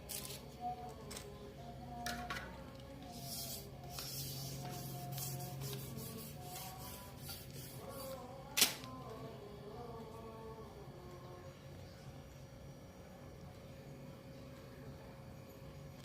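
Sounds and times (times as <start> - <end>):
scrubbing strokes on metal: 3.1 - 8.2.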